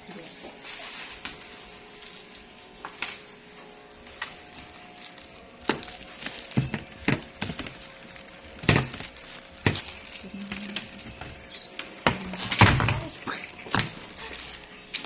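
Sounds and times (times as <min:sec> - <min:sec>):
knocks and clatter of handling: 0:05.6 - 0:14.6.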